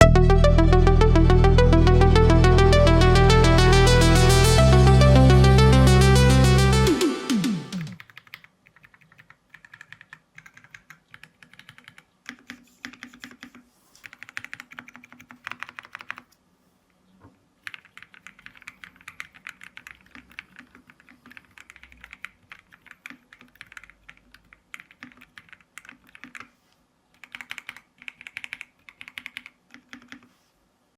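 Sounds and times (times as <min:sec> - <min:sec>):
mechanical keyboard typing: 0:07.9 - 0:16.3, 0:17.6 - 0:26.5, 0:27.2 - 0:30.3.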